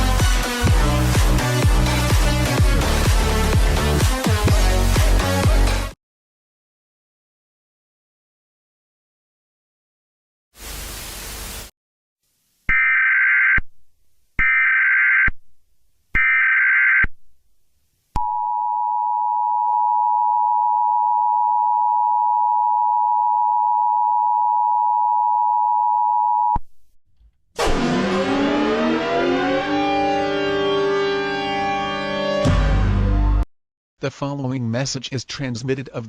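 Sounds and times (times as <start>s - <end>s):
static: 10.6s - 11.7s.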